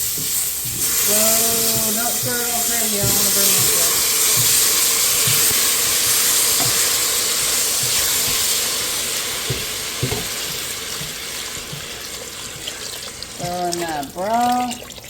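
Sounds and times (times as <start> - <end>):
garlic sizzling in hot pot: 0.0 - 15.0
utensil knocking on pot: 0.2 - 8.6, 9.4 - 11.9.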